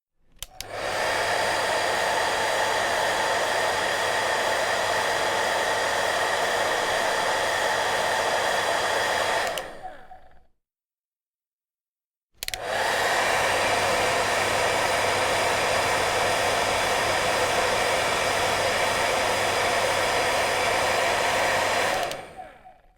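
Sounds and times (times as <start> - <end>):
hair dryer switch click: 0.4 - 1.6, 9.4 - 10.2, 12.4 - 13.6, 21.0 - 22.5
hair dryer running: 0.5 - 10.4, 12.4 - 22.9.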